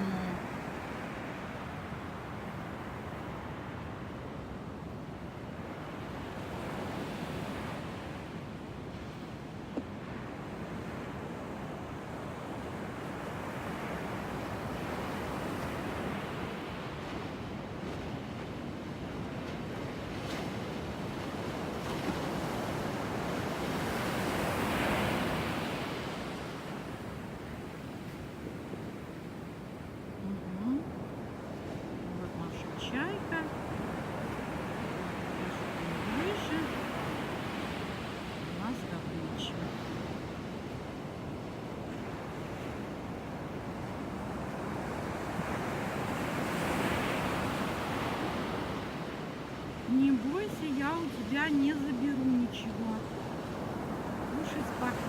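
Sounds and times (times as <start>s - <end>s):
small waves breaking: 5.5s - 55.0s
ocean wave breaking on beach: 32.3s - 40.3s.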